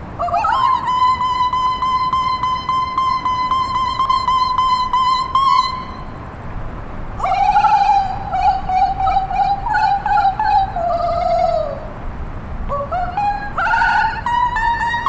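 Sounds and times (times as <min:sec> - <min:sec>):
low wavering held tone: 0:00.2 - 0:06.2, 0:07.2 - 0:12.0
pulsing high electronic vocal tone: 0:07.2 - 0:12.0, 0:12.7 - 0:15.0.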